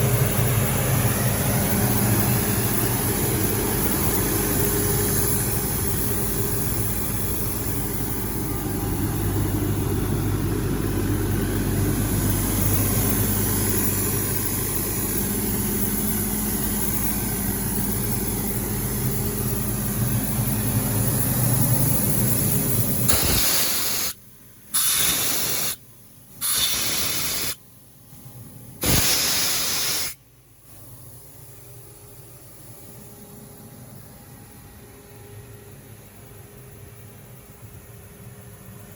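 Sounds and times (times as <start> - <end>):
diesel air compressor running: 0.0 - 27.6, 28.4 - 30.2
air hissing bursts: 23.1 - 25.8, 26.4 - 27.6, 28.8 - 30.2.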